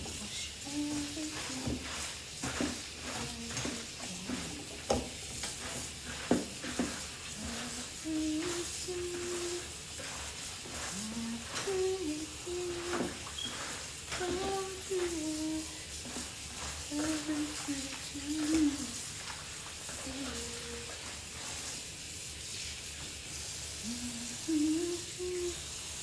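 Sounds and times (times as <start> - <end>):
soup sizzling in a pot: 0.0 - 26.0
person humming a tune: 0.3 - 1.7, 7.4 - 9.7, 10.9 - 13.2, 14.2 - 15.8, 16.9 - 19.0, 20.0 - 20.9, 23.8 - 25.7.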